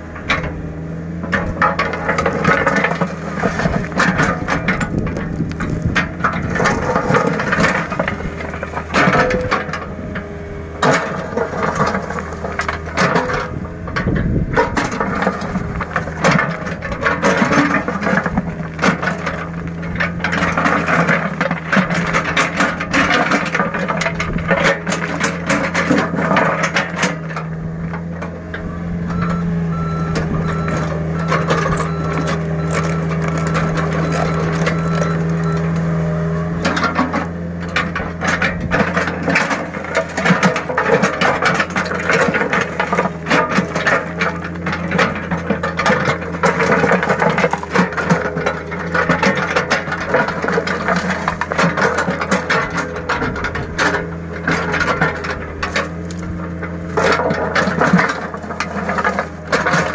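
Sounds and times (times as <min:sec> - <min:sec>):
excavator diesel engine: 0:00.0 - 0:59.9
bucket and tracks scraping sand: 0:01.4 - 0:09.9.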